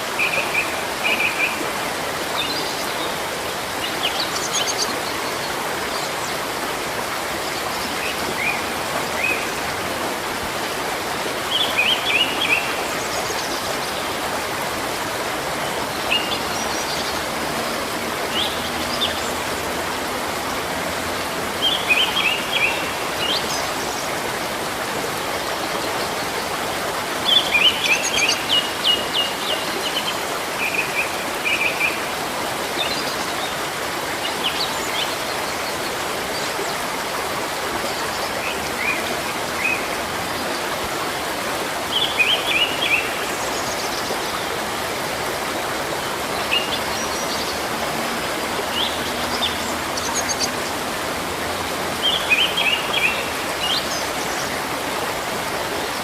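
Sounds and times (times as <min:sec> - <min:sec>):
water flowing: 0:00.0 - 0:56.0.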